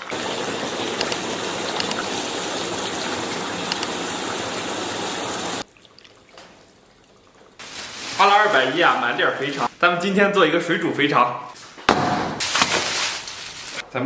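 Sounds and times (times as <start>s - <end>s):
running water: 0.0s - 9.7s.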